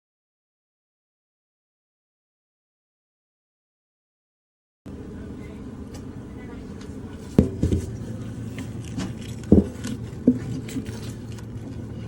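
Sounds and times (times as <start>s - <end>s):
steady low hum: 4.9s - 12.0s
sharp knocks and scrapes: 7.2s - 11.8s.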